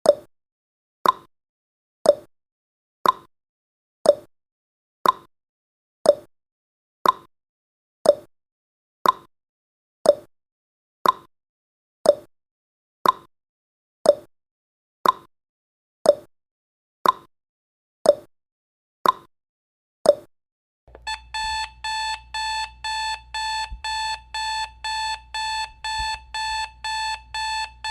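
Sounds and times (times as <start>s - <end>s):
fast alarm beeping: 20.9s - 27.9s
timer ticking: 20.9s - 27.9s.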